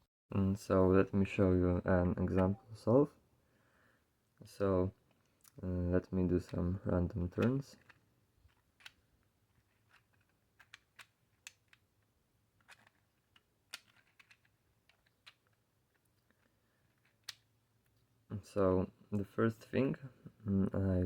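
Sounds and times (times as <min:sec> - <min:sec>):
plastic puzzle pieces clicking: 0:06.4 - 0:18.1.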